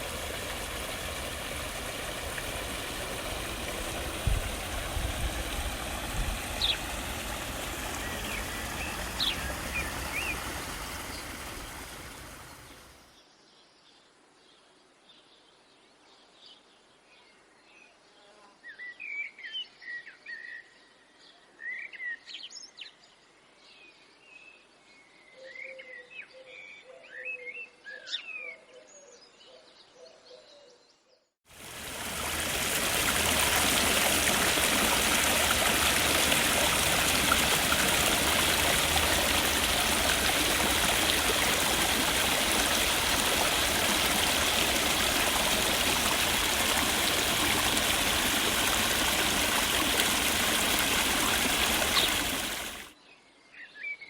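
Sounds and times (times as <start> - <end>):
birds chirping: 0.0 - 13.0, 31.9 - 52.9
water rushing: 0.0 - 13.0, 31.5 - 52.9.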